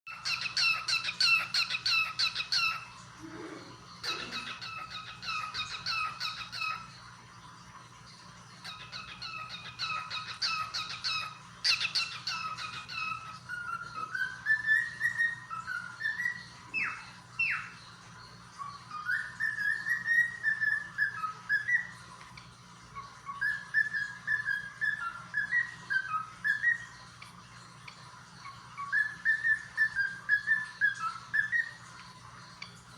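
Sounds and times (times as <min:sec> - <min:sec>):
cockatiel chirping and whistling: 0:00.1 - 0:02.9, 0:04.0 - 0:06.8, 0:08.6 - 0:17.7, 0:18.6 - 0:22.0, 0:23.2 - 0:26.9, 0:28.8 - 0:31.8.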